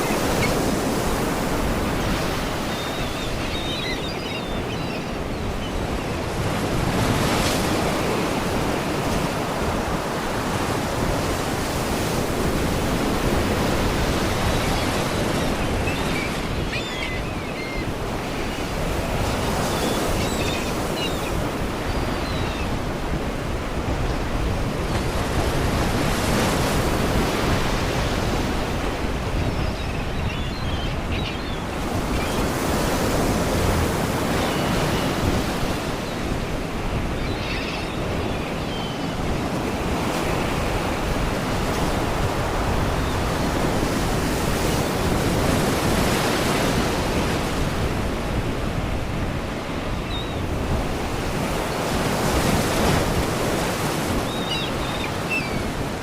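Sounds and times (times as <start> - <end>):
seagull cries: 14.5 - 18.7, 54.2 - 55.8.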